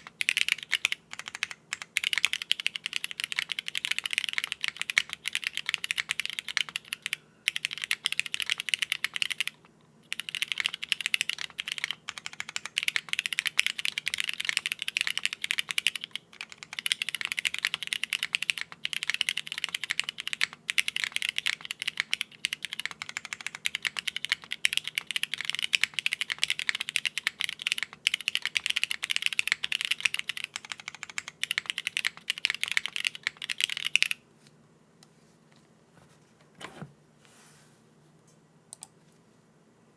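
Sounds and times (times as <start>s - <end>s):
fast typing on mechanical keyboard: 0.0s - 34.2s.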